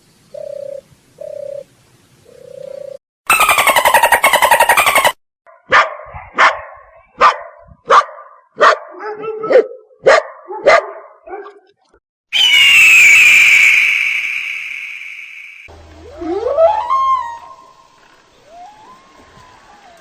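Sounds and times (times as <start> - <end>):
rattling animal call: 3.3 - 5.2
dog barking: 5.5 - 11.7
high gliding animal tone: 12.4 - 17.7.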